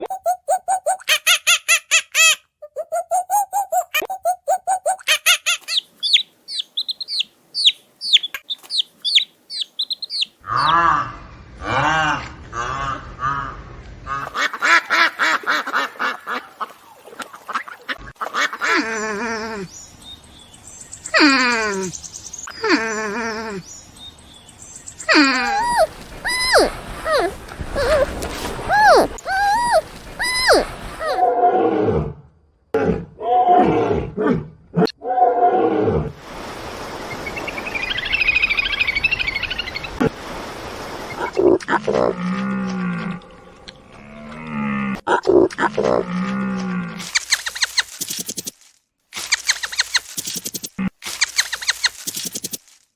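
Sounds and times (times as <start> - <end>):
duck quacking: 11.6 - 18.9
big cat roaring and growling: 31.2 - 36.2, 41.8 - 47.0.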